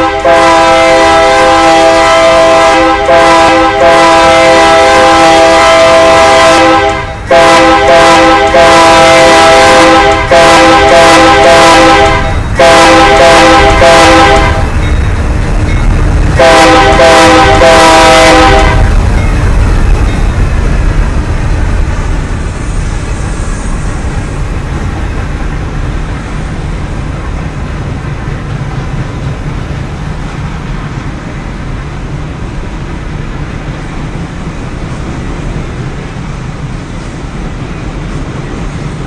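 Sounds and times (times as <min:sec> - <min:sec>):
locomotive air horn blasts: 0:00.0 - 0:14.8, 0:16.4 - 0:19.0
train rumbling: 0:00.0 - 0:39.0.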